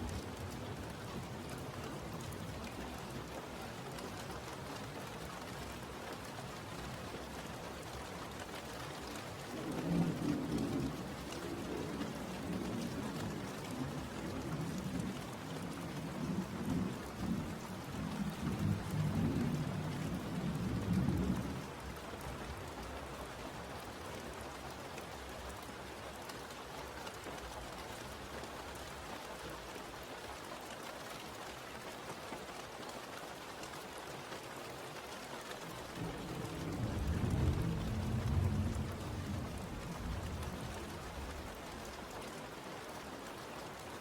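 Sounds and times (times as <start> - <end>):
steady rain falling: 0.0 - 44.0
thunder rumbling: 36.0 - 41.7.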